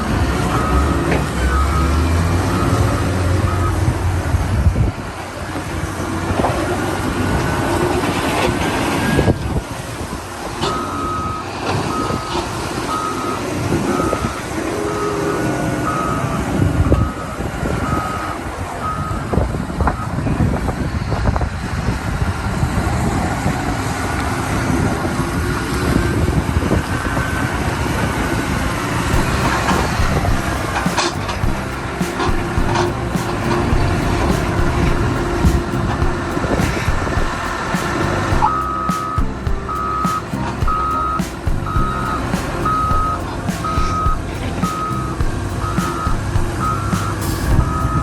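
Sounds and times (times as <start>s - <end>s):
backup alarm beeping: 0.0s - 4.1s, 10.6s - 19.4s, 29.1s - 48.0s
diesel engine under load: 0.0s - 48.0s.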